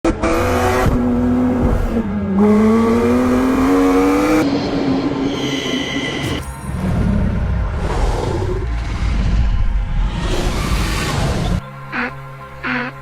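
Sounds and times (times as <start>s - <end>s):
car engine revving: 0.0s - 5.3s.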